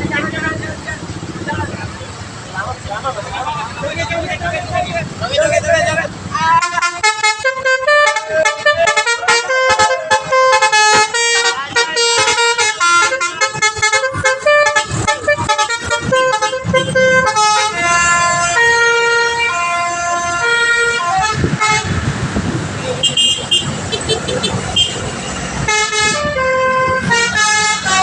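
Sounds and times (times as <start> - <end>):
bus horn playing a melody: 6.6 - 22.1, 22.9 - 28.0.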